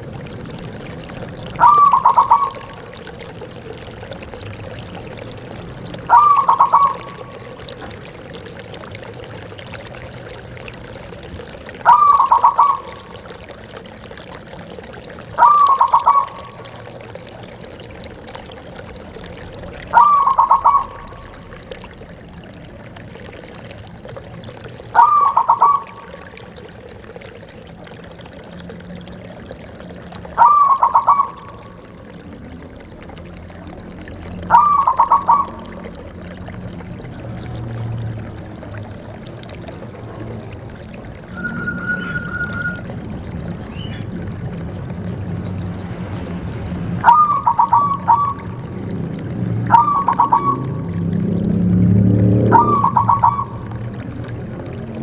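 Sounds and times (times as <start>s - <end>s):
dove cooing: 1.2s - 3.2s, 5.9s - 8.1s, 11.4s - 13.5s, 14.9s - 16.6s, 19.7s - 21.8s, 24.9s - 26.1s, 30.0s - 31.6s, 34.5s - 36.1s, 47.0s - 48.7s, 49.7s - 50.9s, 52.5s - 53.8s.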